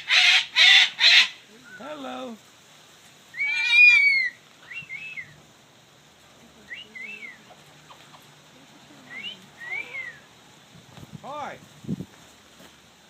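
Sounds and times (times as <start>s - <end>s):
parrots whistled chirps: 3.3s - 5.4s, 9.1s - 10.3s.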